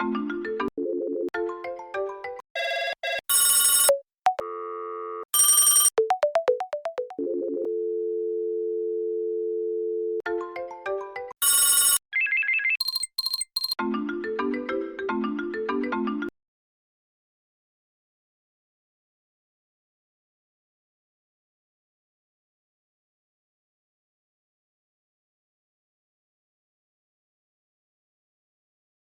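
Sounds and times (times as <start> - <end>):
two-note dial tone: 2.6 - 10.2
electronic beeps: 11.4 - 13.8
electronic chirps: 12.2 - 13.8.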